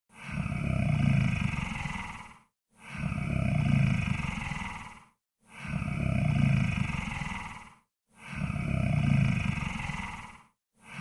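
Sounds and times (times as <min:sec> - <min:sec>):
deep rattling snores: 0:00.1 - 0:11.0.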